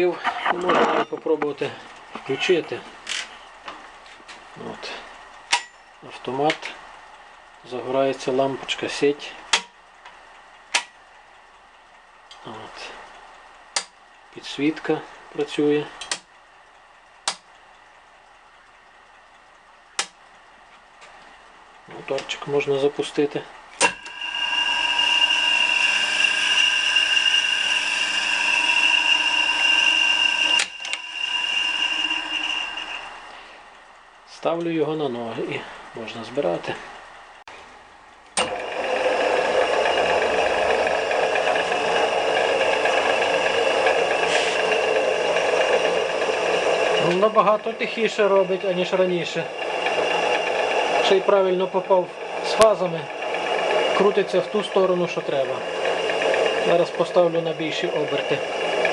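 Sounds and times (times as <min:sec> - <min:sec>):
switch clicks: 0:13.8 - 0:14.0, 0:16.0 - 0:16.3, 0:17.2 - 0:17.5, 0:20.0 - 0:20.2
drill press motor humming: 0:23.8 - 0:33.6, 0:38.4 - 0:58.9.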